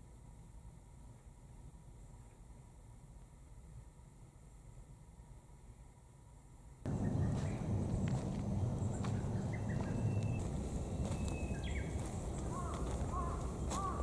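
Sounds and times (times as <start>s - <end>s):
birds chirping: 6.9s - 14.0s
repeated hooked bird calls: 6.9s - 14.0s
steady low rumble: 6.9s - 14.0s.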